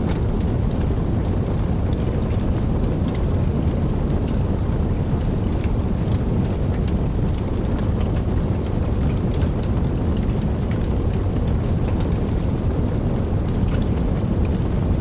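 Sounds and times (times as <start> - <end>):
wood fire crackling: 0.0 - 15.0.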